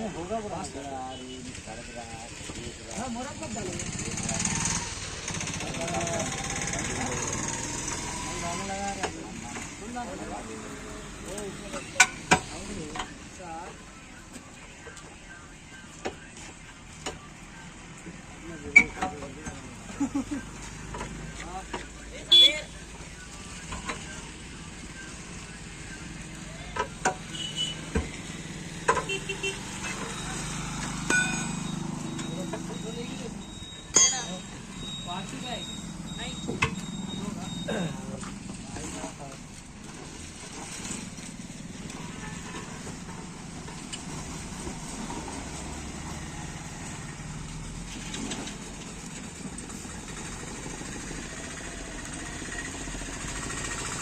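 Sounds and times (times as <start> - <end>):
engine idling: 47.9 - 54.0.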